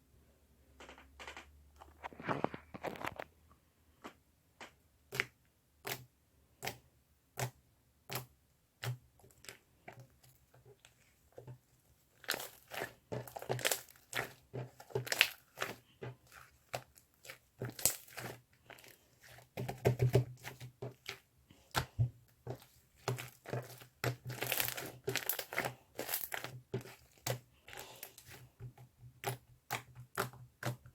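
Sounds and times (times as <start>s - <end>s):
crunching and crinkling: 0.8s - 3.4s, 9.2s - 30.9s.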